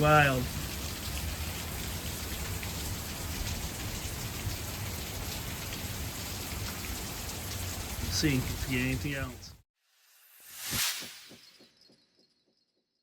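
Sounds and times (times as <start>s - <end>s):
hailstones ticking: 0.0s - 9.5s
rain and hail falling: 0.0s - 9.5s.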